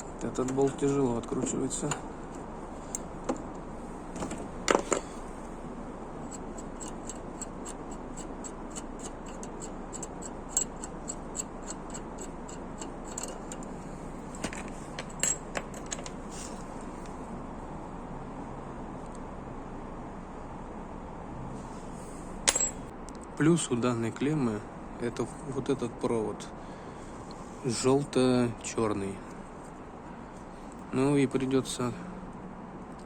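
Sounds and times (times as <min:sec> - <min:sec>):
socket wrench ratchet clicking: 0:06.3 - 0:13.7.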